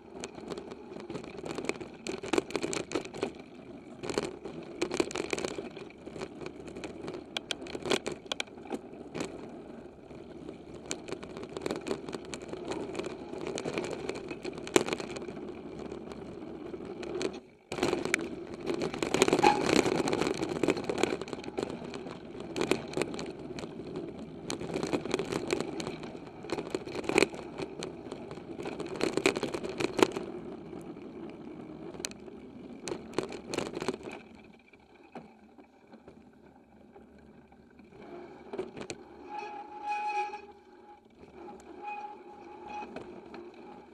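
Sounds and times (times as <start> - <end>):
bike rattling and knocking: 0.0 - 34.5
tyre noise: 0.3 - 34.2.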